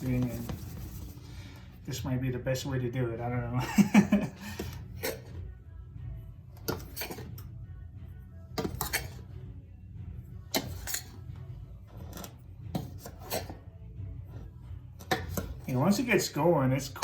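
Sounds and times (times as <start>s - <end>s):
utensil scraping a pan: 0.0s - 1.6s, 8.6s - 9.3s, 10.5s - 15.9s
quiet background music: 0.0s - 17.0s.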